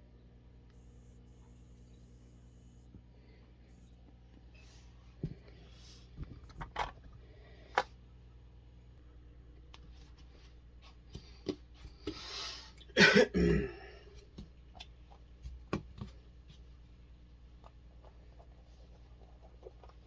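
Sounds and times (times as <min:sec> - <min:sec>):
man coughing: 0:12.9 - 0:14.0.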